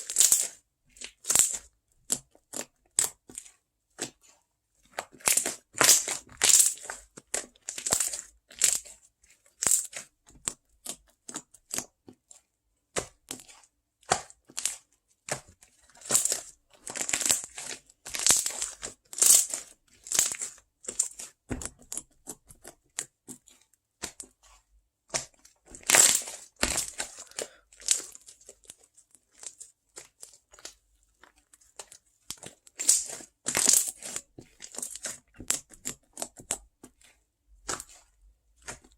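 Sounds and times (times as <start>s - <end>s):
crisp crunching and crinkling: 0.0s - 1.6s, 4.9s - 8.9s, 15.8s - 24.6s, 25.2s - 38.9s.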